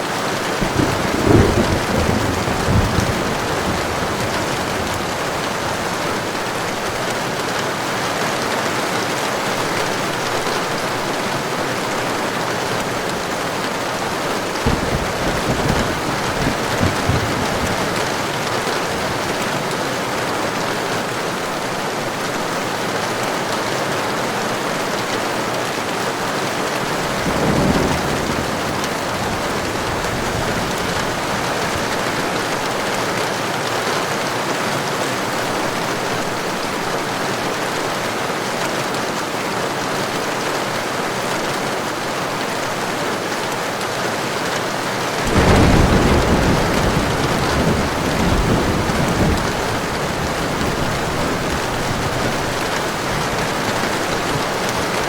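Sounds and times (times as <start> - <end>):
heavy rain: 0.0 - 55.0
thunder rumbling: 0.5 - 7.2, 12.2 - 19.9, 26.9 - 33.1, 45.2 - 55.0.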